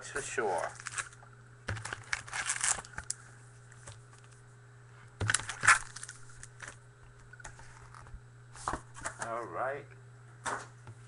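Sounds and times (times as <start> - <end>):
foil wrapper crinkling and tearing: 0.5 - 4.4, 5.2 - 6.8.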